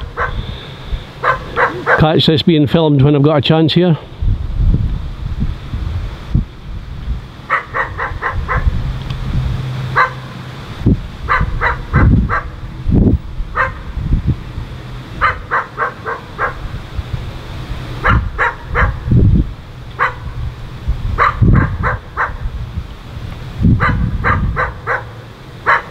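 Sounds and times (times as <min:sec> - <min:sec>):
dog barking: 0:00.0 - 0:00.4, 0:01.2 - 0:02.2, 0:07.5 - 0:08.7, 0:10.0 - 0:10.3, 0:11.3 - 0:12.6, 0:13.6 - 0:13.9, 0:15.2 - 0:16.6, 0:18.0 - 0:19.1, 0:20.0 - 0:20.3, 0:21.2 - 0:22.4, 0:23.8 - 0:25.9.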